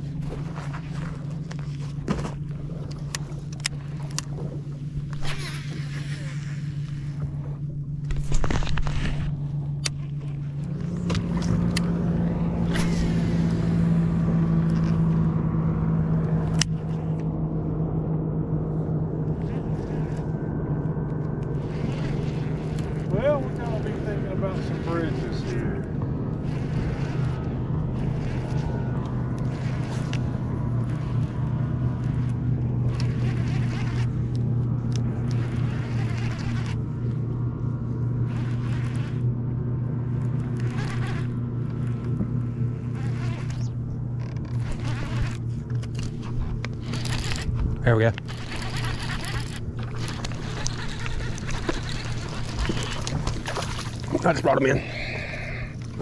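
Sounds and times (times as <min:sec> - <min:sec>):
outboard motor running: 0:00.0 - 0:56.0.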